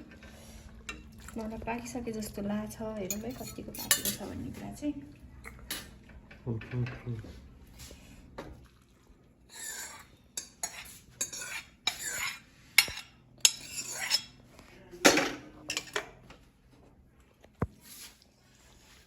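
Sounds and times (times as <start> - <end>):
spoon stirring soup: 3.0 - 4.4, 7.8 - 14.6.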